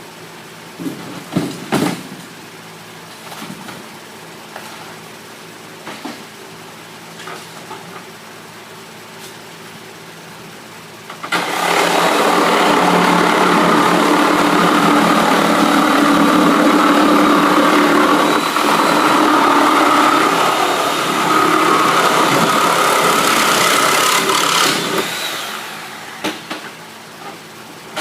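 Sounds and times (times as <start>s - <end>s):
motor running: 11.2s - 26.3s.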